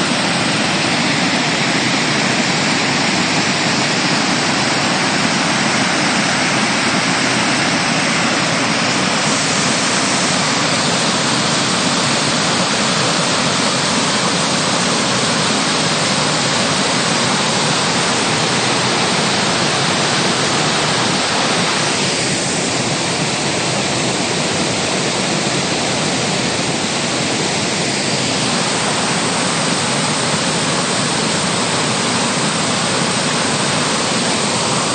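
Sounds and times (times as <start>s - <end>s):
waterfall crashing into pool: 0.0s - 34.9s.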